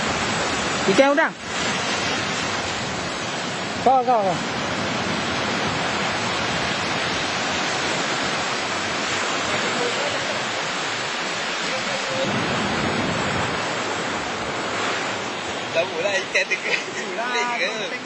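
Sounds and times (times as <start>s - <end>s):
surf washing on beach: 0.0s - 18.0s.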